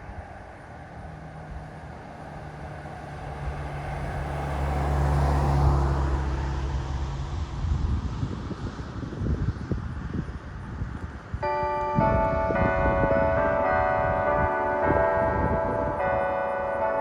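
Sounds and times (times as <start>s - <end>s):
vehicle driving past: 0.8s - 8.0s.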